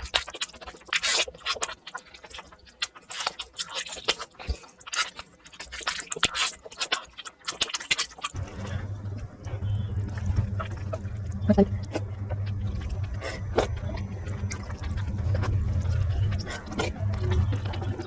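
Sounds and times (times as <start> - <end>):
chewing and smacking: 0.0 - 8.4, 9.4 - 18.0
steady low hum: 8.3 - 18.0.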